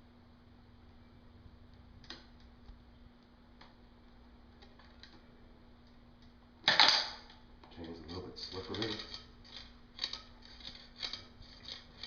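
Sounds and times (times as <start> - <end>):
faint steady hum: 0.0 - 12.0
bicycle chain links clicking: 8.5 - 12.0.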